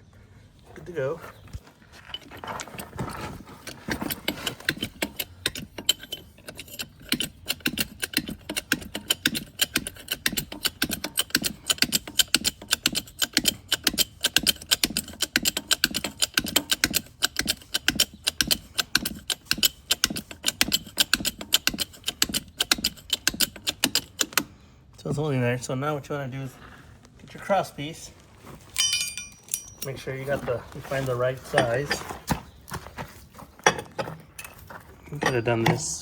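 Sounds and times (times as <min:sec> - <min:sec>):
jack clicking: 0:03.6 - 0:24.5.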